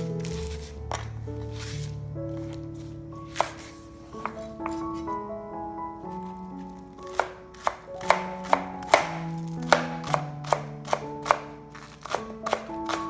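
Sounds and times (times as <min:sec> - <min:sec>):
background music of held notes: 0:00.0 - 0:13.0
knife chopping on cutting board: 0:03.3 - 0:04.8, 0:07.1 - 0:13.0.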